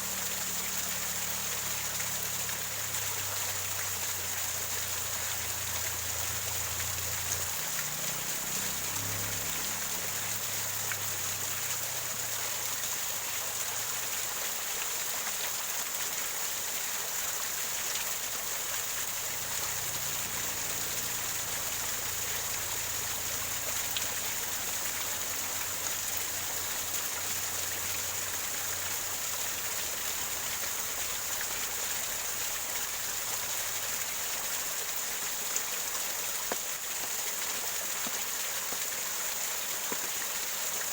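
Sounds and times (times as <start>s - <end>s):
waterfall gurgling over rocks: 0.0s - 40.9s.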